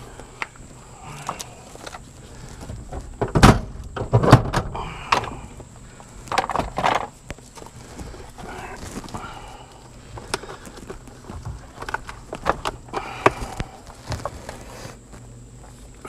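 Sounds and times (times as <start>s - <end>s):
metal parts clunking: 6.2s - 7.2s.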